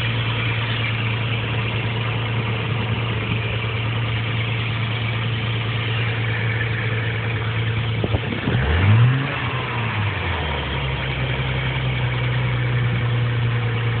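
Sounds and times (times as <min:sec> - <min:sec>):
car engine idling: 0:00.0 - 0:14.0
engine revving: 0:05.6 - 0:13.1.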